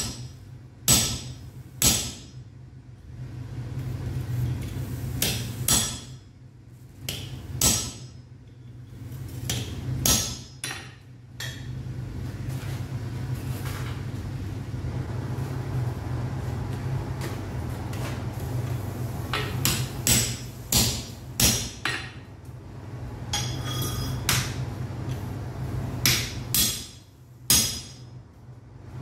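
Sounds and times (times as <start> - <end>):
hammer striking iron on anvil: 0.0 - 2.4, 5.2 - 6.2, 7.1 - 8.2, 9.5 - 11.7, 19.3 - 22.2, 23.3 - 24.6, 26.0 - 28.2
steady low hum: 0.0 - 29.0.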